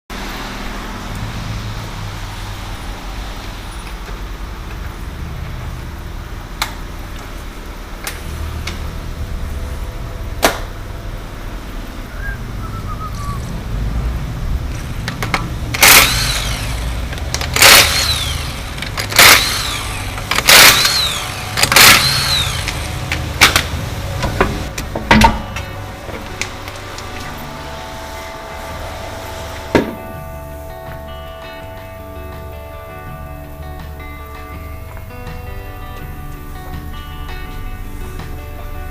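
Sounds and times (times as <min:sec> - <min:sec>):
low workshop hum: 0:00.1 - 0:37.1
sharp clicks: 0:15.1 - 0:24.9
pneumatic air tool bursts: 0:15.7 - 0:24.6.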